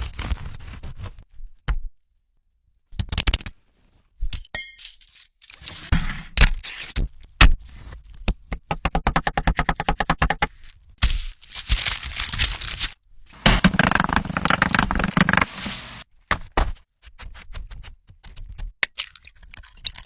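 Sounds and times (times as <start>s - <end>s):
kitchen utensils clinking and scraping: 13.4s - 16.0s.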